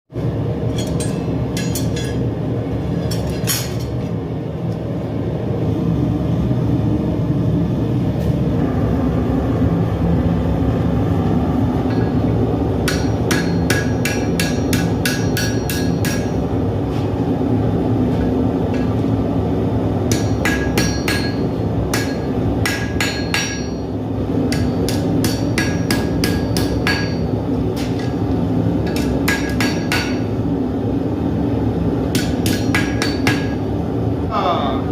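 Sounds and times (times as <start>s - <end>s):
steady low rumble: 0.1s - 34.9s
hammer striking steel on anvil: 0.7s - 2.3s, 3.1s - 3.9s, 11.8s - 16.5s, 20.1s - 23.9s, 24.5s - 28.2s, 28.8s - 30.4s, 32.1s - 33.6s.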